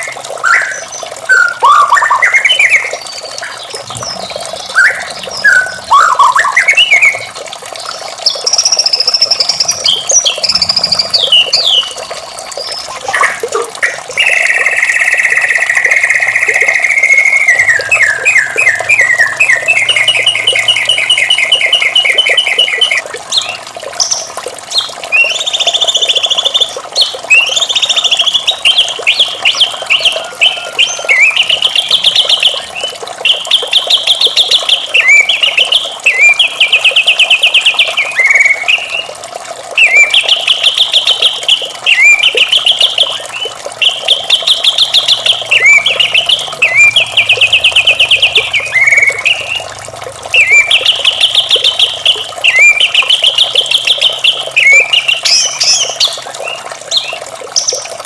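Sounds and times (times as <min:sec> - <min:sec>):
running water: 0:00.0 - 0:58.0.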